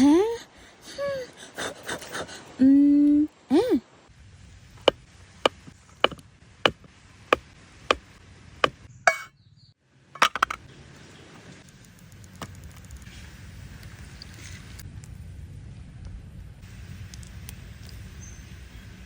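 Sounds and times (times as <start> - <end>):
sharp chopping strikes: 4.9 - 9.3.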